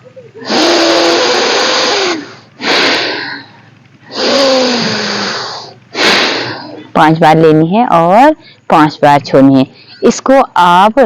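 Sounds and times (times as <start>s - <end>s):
person breathing deeply: 0.4s - 6.9s.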